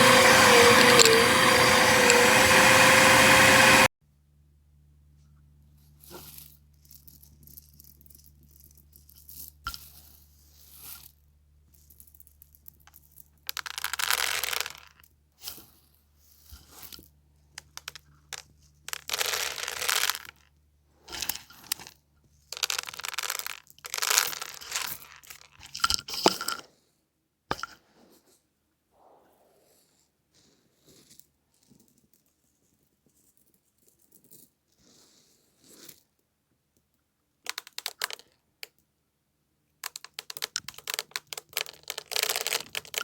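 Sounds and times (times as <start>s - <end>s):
foil crinkling and crunching: 18.9s - 20.3s.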